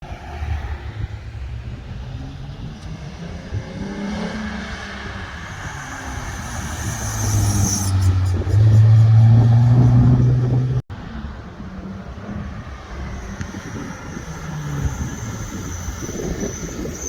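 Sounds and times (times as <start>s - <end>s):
low engine drone: 0.8s - 14.2s
brakes squealing: 2.2s - 10.8s, 12.3s - 17.0s.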